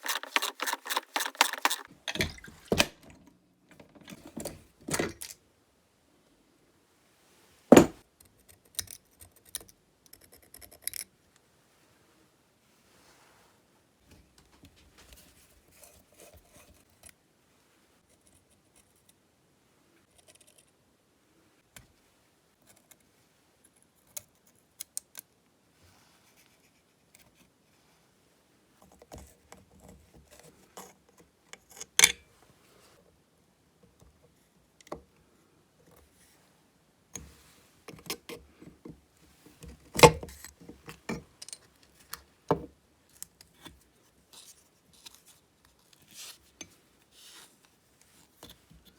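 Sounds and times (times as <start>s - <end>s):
metal parts clicking and clinking: 0.0s - 3.1s, 40.0s - 42.0s
sharp knocks: 7.7s - 8.0s.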